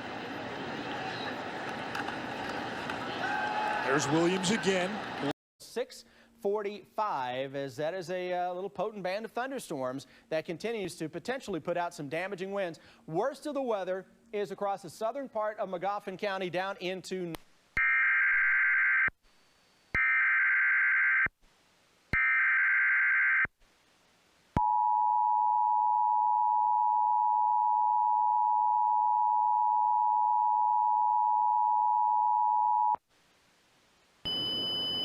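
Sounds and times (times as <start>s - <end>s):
high beep: 34.3s - 35.0s.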